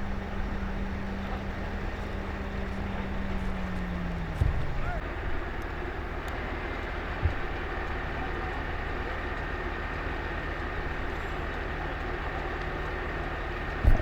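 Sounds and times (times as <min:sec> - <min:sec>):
short low bump: 0:00.0 - 0:05.4
boat engine droning: 0:00.0 - 0:14.0.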